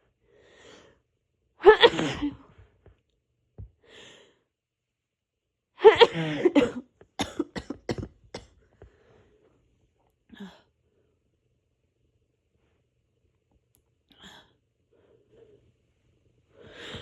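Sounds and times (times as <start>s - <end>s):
woman sneezing: 1.6s - 2.4s, 5.8s - 7.8s.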